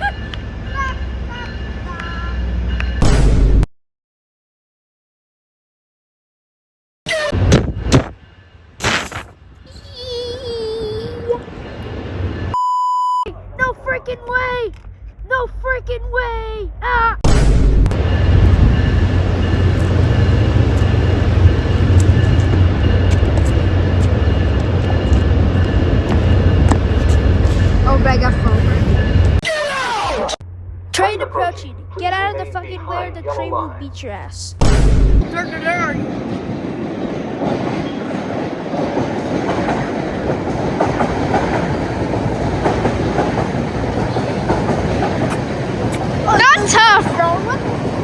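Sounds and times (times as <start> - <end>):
train rumbling past: 0.0 - 3.6, 7.4 - 12.6, 13.3 - 29.4, 35.0 - 48.0
wheels clacking over rail joints: 18.0 - 29.4, 35.4 - 48.0.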